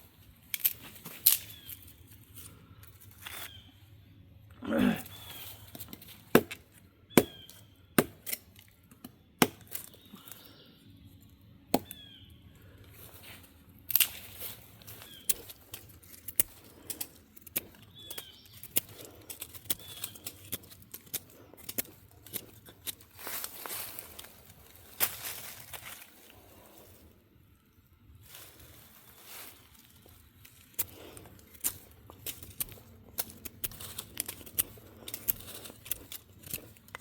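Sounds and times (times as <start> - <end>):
bird chirps: 3.3 - 3.8, 7.1 - 7.8, 11.8 - 12.5, 14.9 - 15.5, 17.9 - 18.7.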